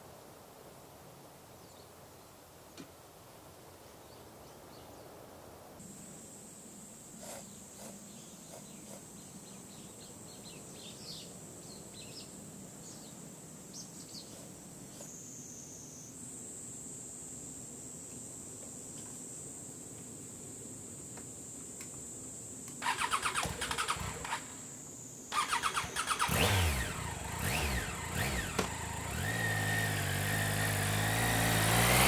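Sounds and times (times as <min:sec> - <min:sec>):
insect chirps: 0:05.8 - 0:31.2
insects trilling: 0:13.7 - 0:31.2.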